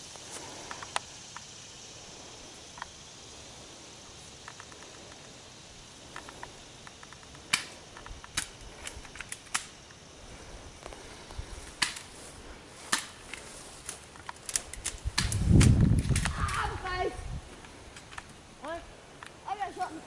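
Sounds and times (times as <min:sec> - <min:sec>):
steady background hiss: 0:00.0 - 0:20.0
airsoft guns snapping: 0:06.1 - 0:10.0, 0:11.7 - 0:12.1, 0:12.9 - 0:16.7, 0:17.6 - 0:18.4.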